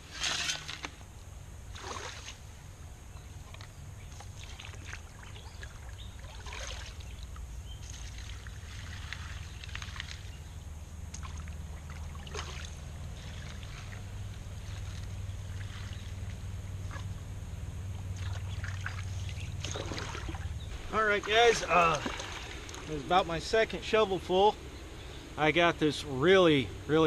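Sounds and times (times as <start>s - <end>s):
shovel digging into wet gravel: 0.0s - 1.0s
water and stones splashing: 1.7s - 2.4s, 3.5s - 10.4s, 11.1s - 17.1s, 18.0s - 24.2s.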